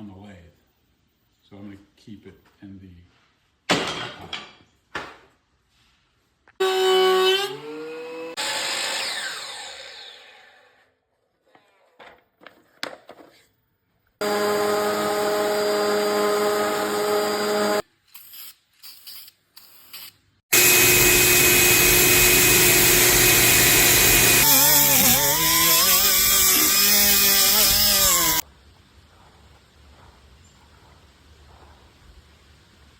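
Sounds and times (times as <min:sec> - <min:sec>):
power tool cutting wood: 0:06.6 - 0:10.8, 0:14.2 - 0:17.8, 0:20.5 - 0:28.4
power tool motor running: 0:14.2 - 0:17.8, 0:20.5 - 0:28.4.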